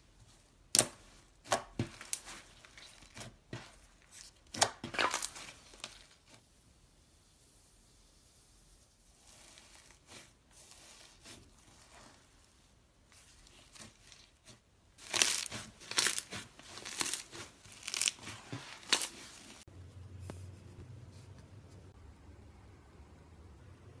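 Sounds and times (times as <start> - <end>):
slime squishing: 0.3 - 19.7
slime crackling: 0.7 - 6.4, 9.2 - 19.6.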